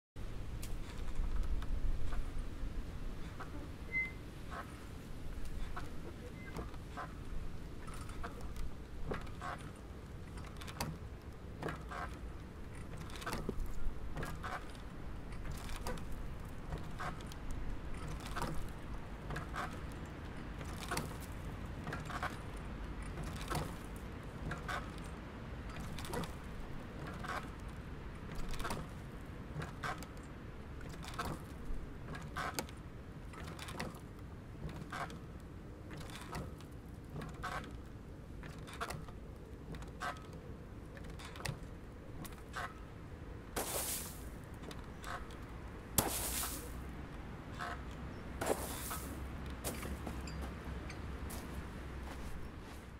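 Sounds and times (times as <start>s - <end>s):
swing chains squeaking and clinking: 3.2s - 4.8s, 5.6s - 11.0s, 16.7s - 18.6s, 47.5s - 52.6s.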